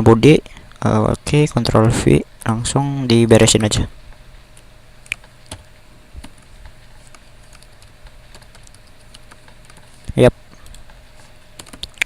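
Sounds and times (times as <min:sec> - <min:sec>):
computer keyboard typing: 0:05.0 - 0:11.0, 0:11.6 - 0:12.0.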